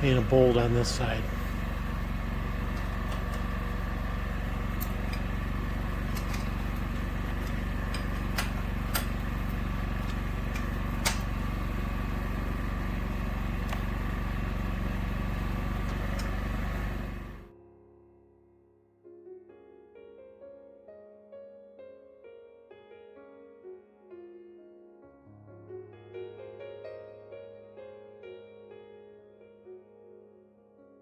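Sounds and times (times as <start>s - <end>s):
snowblower engine running: 0.0s - 17.5s
sharp clicks: 7.3s - 9.3s, 10.0s - 11.3s.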